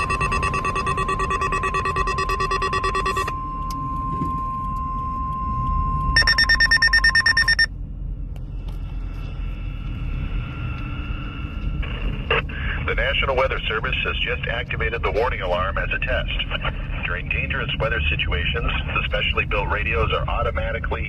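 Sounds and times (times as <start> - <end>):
rapid electronic beeping: 0.0 - 4.1, 5.8 - 7.7
steady high alarm tone: 0.0 - 7.7
other steady tones: 0.0 - 17.6.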